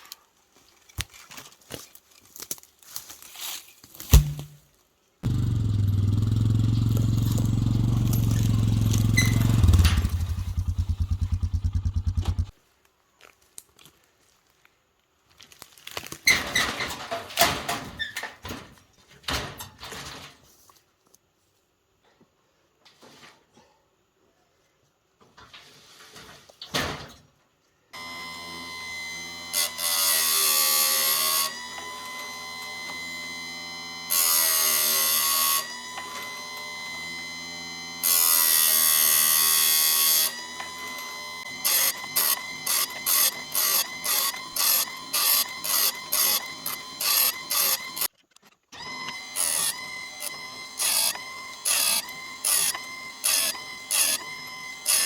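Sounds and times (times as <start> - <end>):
grinding wheel rasping on chain: 5.2 - 11.0, 28.0 - 48.1, 49.0 - 55.0
sharpener motor humming: 28.0 - 48.1, 48.8 - 55.0.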